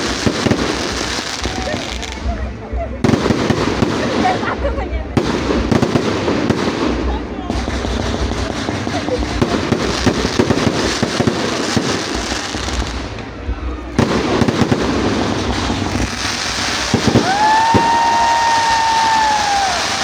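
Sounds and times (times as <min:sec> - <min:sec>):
firecrackers crackling pops: 0:00.0 - 0:20.0.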